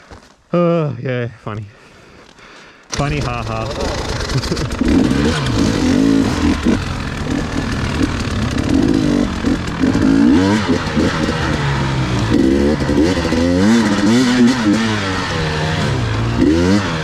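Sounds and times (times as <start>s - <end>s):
dirt bike engine revving: 2.9s - 17.0s.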